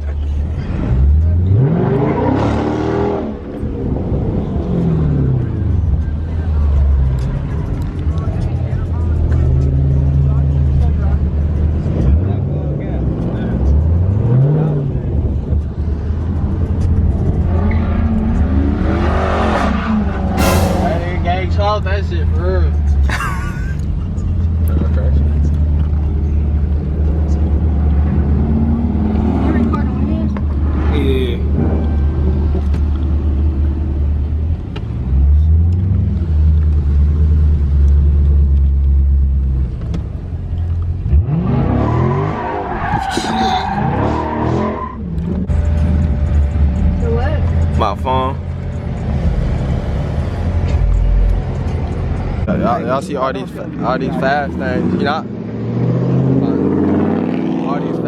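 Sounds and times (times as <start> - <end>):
car engine revving: 0.2 - 23.0, 24.1 - 58.0
tires squealing: 13.6 - 23.0, 41.1 - 46.2
harsh noise burst: 20.3 - 21.9.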